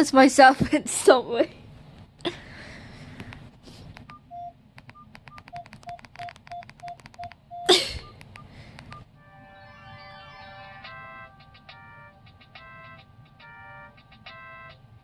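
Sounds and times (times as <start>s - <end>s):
short keypad beeps: 4.1s - 9.0s
phone keypad clicking: 4.8s - 7.4s
phone ringtone melody: 9.2s - 14.8s.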